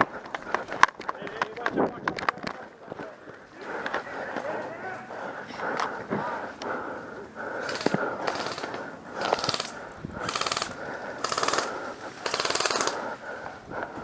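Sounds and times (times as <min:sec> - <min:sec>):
airsoft gun firing bursts: 0:07.6 - 0:13.1.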